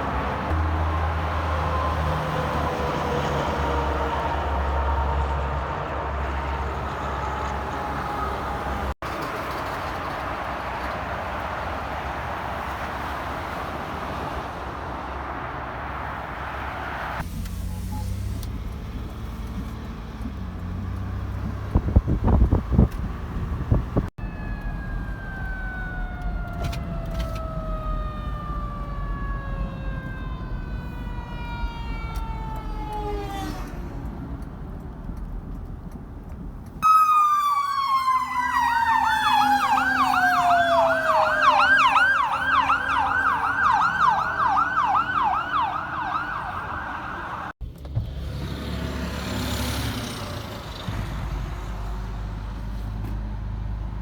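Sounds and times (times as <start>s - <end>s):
emergency vehicle siren: 0.0s - 9.0s, 24.1s - 34.3s, 36.8s - 47.6s
traffic noise: 0.0s - 54.0s
vehicle passing: 26.9s - 34.8s, 37.8s - 54.0s.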